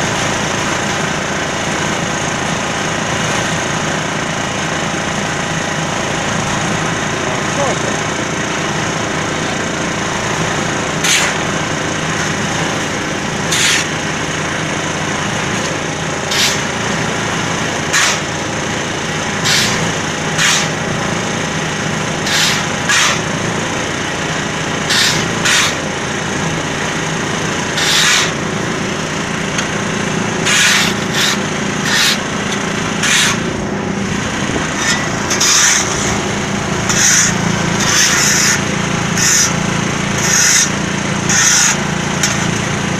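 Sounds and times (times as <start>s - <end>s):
diesel engine running: 0.0s - 42.9s
scraping sounds: 11.0s - 11.4s, 13.5s - 13.9s, 16.3s - 16.6s, 27.8s - 28.3s, 30.4s - 32.3s, 33.0s - 33.6s, 34.4s - 36.2s, 36.9s - 38.6s.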